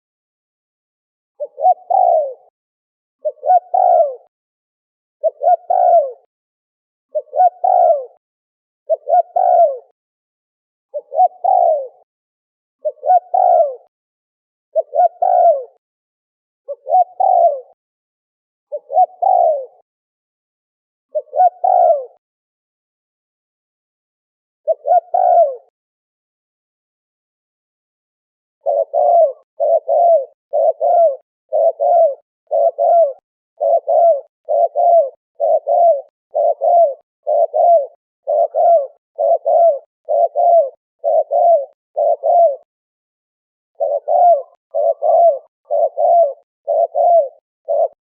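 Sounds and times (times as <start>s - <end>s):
dove cooing: 1.4s - 2.5s, 3.2s - 4.3s, 5.2s - 6.3s, 7.1s - 8.2s, 8.9s - 10.0s, 10.9s - 12.1s, 12.8s - 13.9s, 14.7s - 15.8s, 16.7s - 17.8s, 18.7s - 19.8s, 21.1s - 22.2s, 24.6s - 25.7s, 28.6s - 42.7s, 43.8s - 48.0s.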